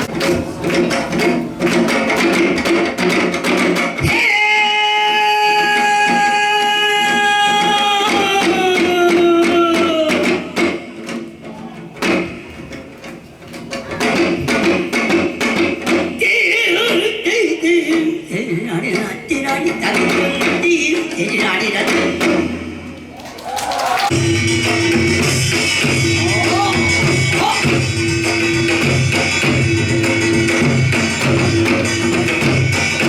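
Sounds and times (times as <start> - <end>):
hourglass drum rhythm: 24.1 - 33.0.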